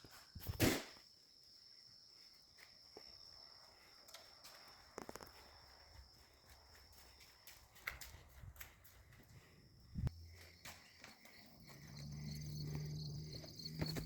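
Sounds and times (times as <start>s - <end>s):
high-pitched whine: 10.0s - 14.0s.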